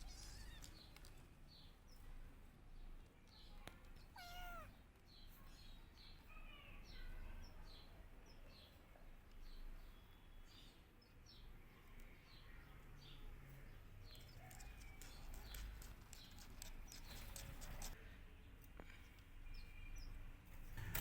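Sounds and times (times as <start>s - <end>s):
kitten meowing: 0.0s - 0.8s, 4.1s - 4.8s
small birds chirping: 0.0s - 21.0s.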